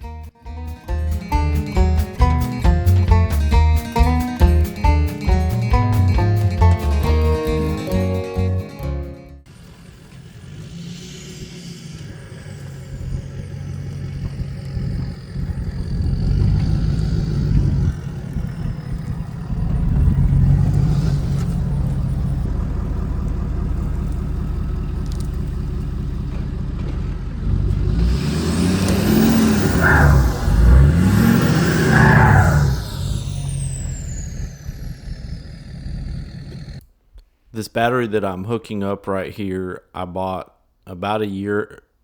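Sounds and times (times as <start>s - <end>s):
vehicle engine revving: 9.4s - 36.9s.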